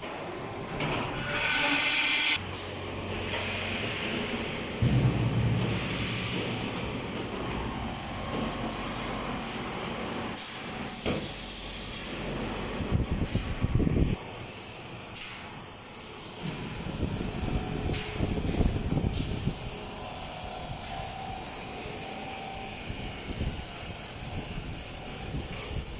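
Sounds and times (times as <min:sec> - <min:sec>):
laser welder hissing: 0:14.2 - 0:25.9.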